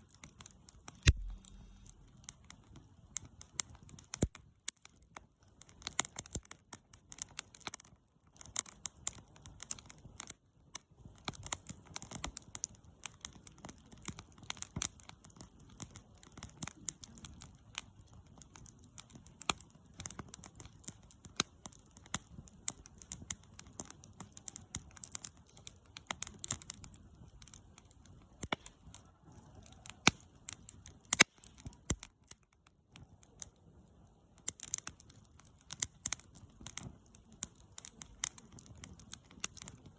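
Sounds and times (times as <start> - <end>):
campfire crackling: 0.0 - 39.9
soft hiss of burning: 0.0 - 39.9.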